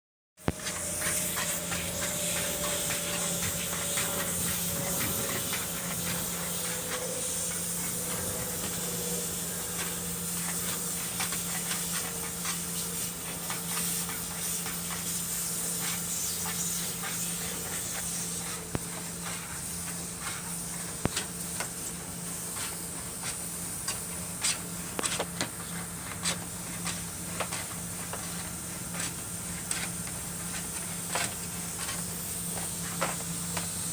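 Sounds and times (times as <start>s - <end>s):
low motor hum: 0.4s - 15.2s.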